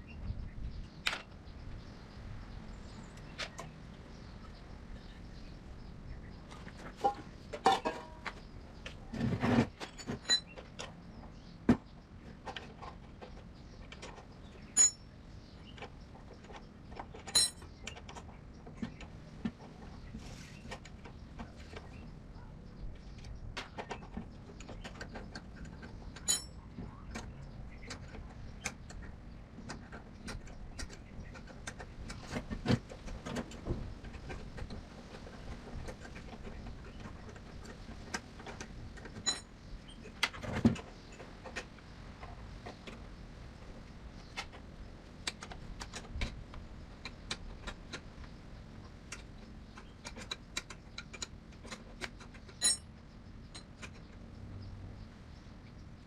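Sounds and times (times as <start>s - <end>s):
low steady background noise: 0.0s - 56.0s
metal tools clinking and knocking: 7.0s - 8.3s, 14.8s - 15.0s, 17.2s - 17.6s, 25.0s - 26.6s, 39.2s - 39.5s, 52.6s - 52.9s.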